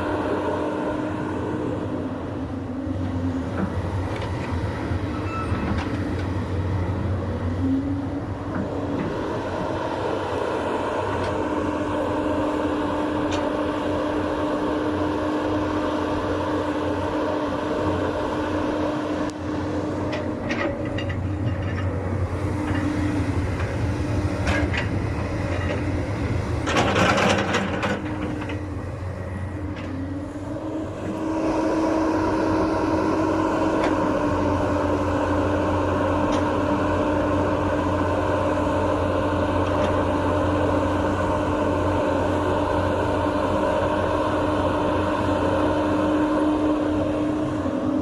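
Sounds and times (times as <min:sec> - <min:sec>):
excavator diesel engine running: 0:00.0 - 0:48.0.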